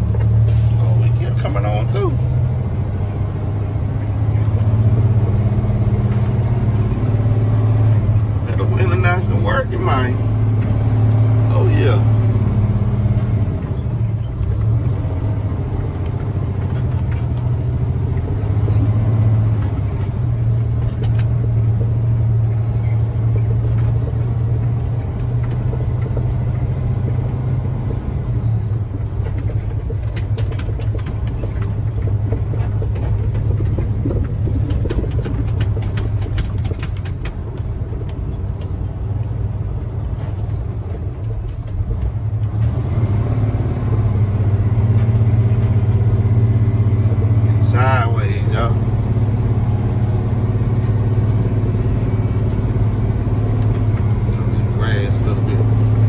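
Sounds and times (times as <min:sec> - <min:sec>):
truck diesel engine under load: 0:00.0 - 0:56.0
quick clicks and rattles: 0:28.9 - 0:38.7.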